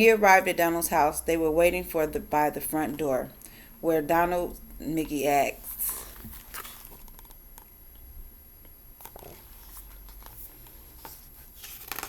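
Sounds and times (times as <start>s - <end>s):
book pages clicking and rustling: 6.1s - 7.7s, 9.0s - 12.0s.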